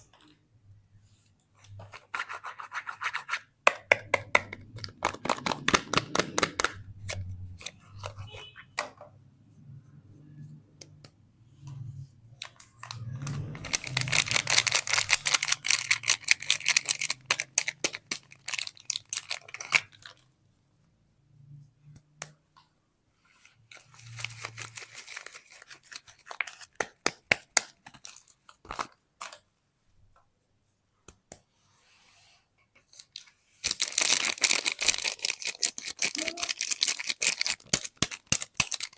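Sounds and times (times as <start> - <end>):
wrapper crinkling and tearing: 12.8 - 20.2, 23.7 - 26.8, 33.6 - 38.9.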